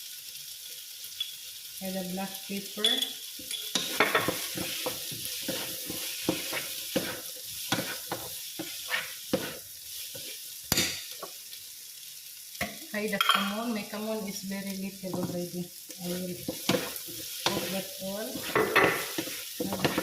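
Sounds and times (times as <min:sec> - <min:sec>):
vegetables sizzling in a pan: 0:00.0 - 0:20.0
utensil scraping and knocking pan: 0:03.7 - 0:10.3, 0:16.4 - 0:20.0.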